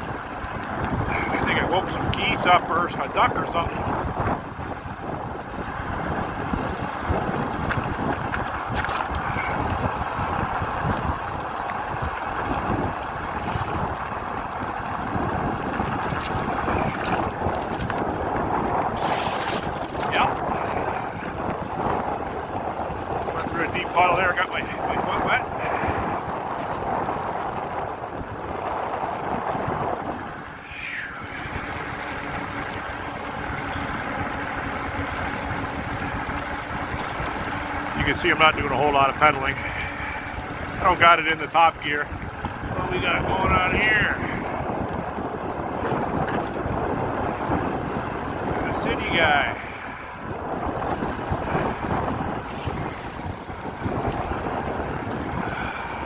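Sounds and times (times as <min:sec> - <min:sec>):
tyres rolling on wet trail: 0:00.0 - 0:56.0
wind buffeting microphone: 0:00.0 - 0:56.0
rain hiss: 0:30.5 - 0:36.6, 0:55.3 - 0:56.0.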